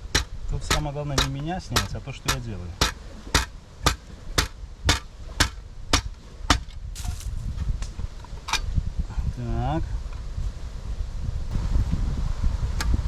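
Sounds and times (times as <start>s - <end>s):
hammer knocking on metal: 0.0s - 6.6s.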